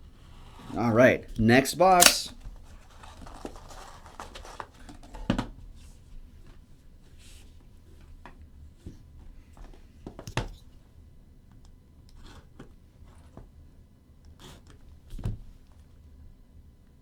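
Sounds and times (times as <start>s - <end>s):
cards rustling: 1.0s - 2.3s.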